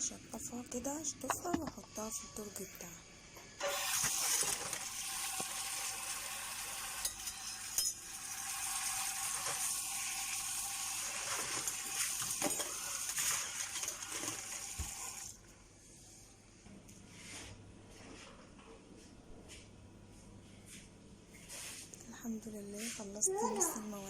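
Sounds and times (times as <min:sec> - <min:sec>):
tap water running: 0:03.6 - 0:15.4
metal spoons clinking: 0:07.0 - 0:08.0.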